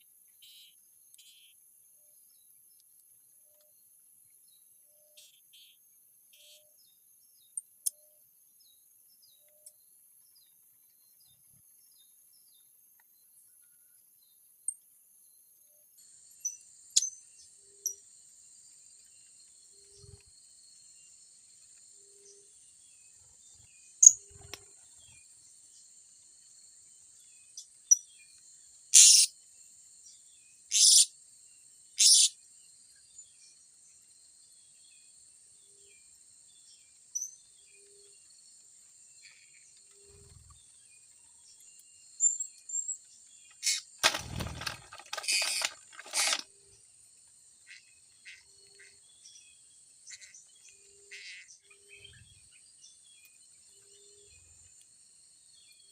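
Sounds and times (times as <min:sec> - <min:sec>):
parrots high-pitched calls: 0:29.0 - 0:29.3.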